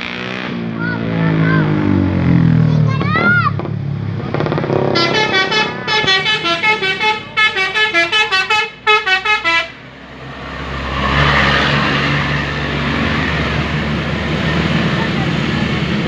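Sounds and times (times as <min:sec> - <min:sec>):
bus passing by: 0:00.0 - 0:16.0
bus melody horn: 0:04.8 - 0:09.9.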